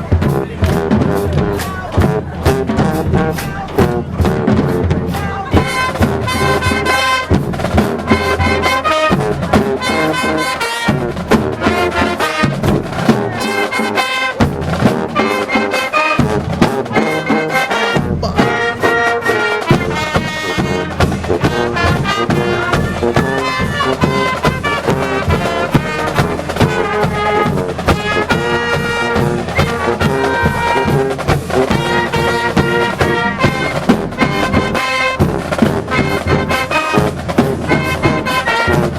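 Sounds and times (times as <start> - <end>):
trumpets and trombones playing: 0.0 - 38.9
drum hits: 18.0 - 36.4.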